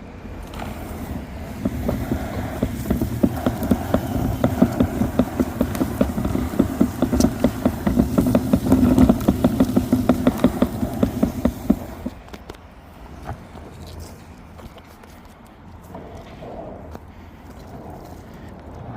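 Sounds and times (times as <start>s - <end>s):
leaf sweeper rattling over leaves: 0.4s - 12.2s.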